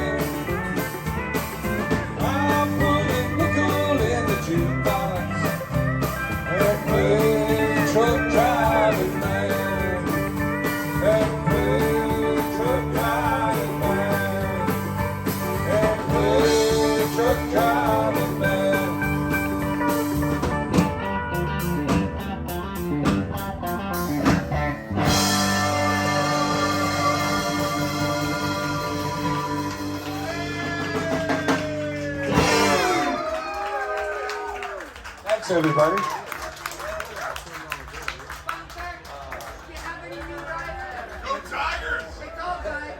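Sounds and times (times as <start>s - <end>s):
lead guitar bent notes: 0.0s - 31.6s, 32.2s - 33.2s
country band instrumental: 0.0s - 34.0s.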